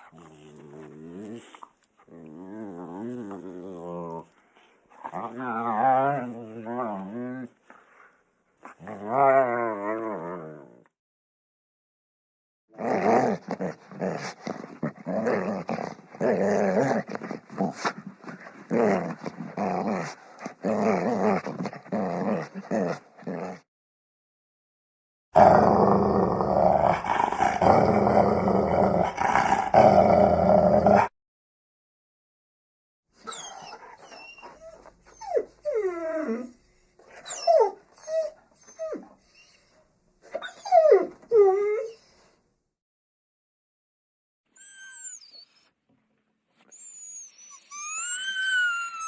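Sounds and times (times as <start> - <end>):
dogs growling: 0.0 - 7.8, 12.8 - 23.7, 25.4 - 31.1
dog whines and yips: 33.2 - 42.3, 44.5 - 45.8, 46.6 - 49.0.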